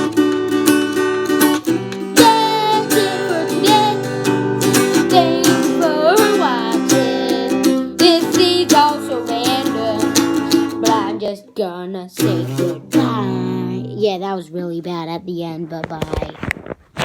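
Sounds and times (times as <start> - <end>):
acoustic guitar strummed: 0.0 - 11.4, 12.2 - 14.0
person singing: 2.0 - 16.0.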